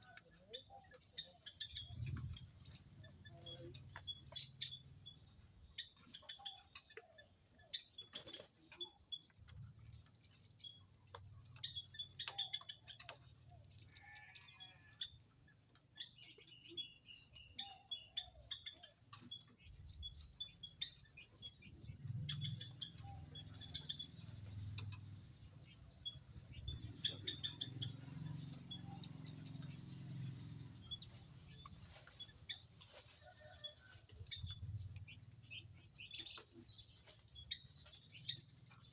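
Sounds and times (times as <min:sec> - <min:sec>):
bird trill: 0:00.0 - 0:09.4, 0:10.0 - 0:32.7
bird chirping high: 0:16.0 - 0:32.7.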